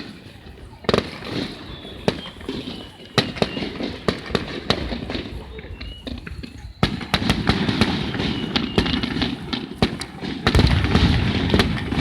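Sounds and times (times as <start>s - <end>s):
fireworks bangs and crackles: 0.0s - 12.0s
deep firework boom: 10.4s - 12.0s.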